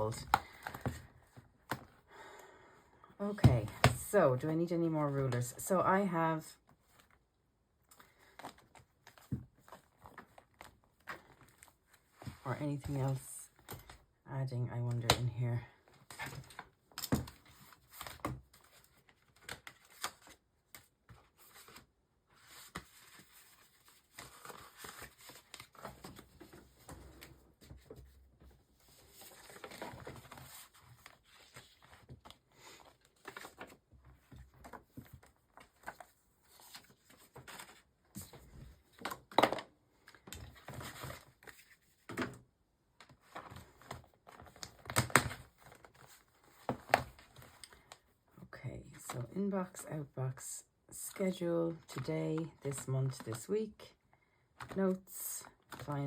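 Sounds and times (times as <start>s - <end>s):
paper pages rustling: 16.0s - 42.3s, 43.0s - 48.1s.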